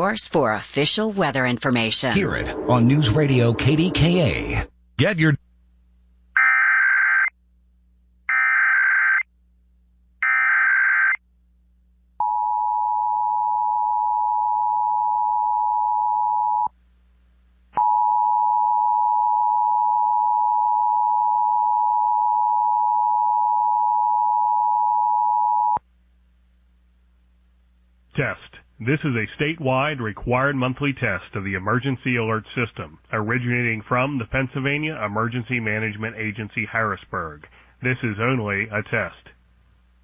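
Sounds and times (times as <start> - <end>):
two-note attention signal: 2.1 - 4.7.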